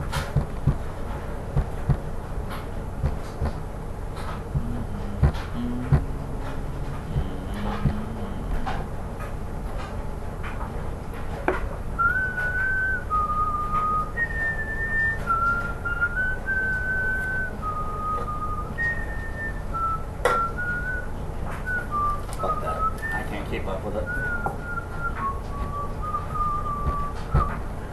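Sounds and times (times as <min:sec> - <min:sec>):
person whistling a slow tune: 0:04.6 - 0:08.9, 0:12.0 - 0:27.7.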